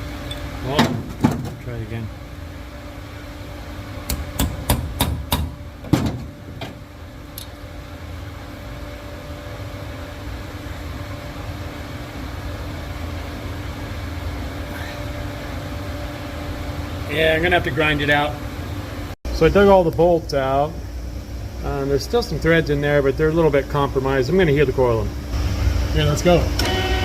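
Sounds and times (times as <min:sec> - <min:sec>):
steady low hum: 0:00.0 - 0:27.0
hammer tapping on metal: 0:04.1 - 0:05.6.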